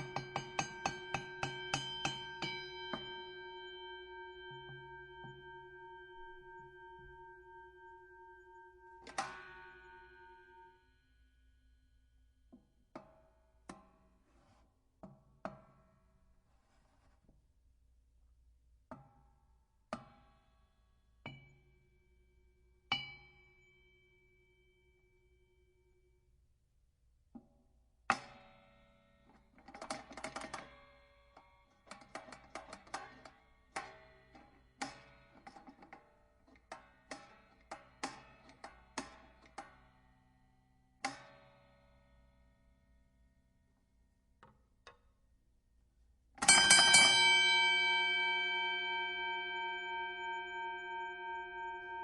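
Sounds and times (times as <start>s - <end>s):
boxing ring bell strikes: 0.0s - 10.7s, 46.4s - 52.0s
boxing ring bell ringing: 46.4s - 52.0s.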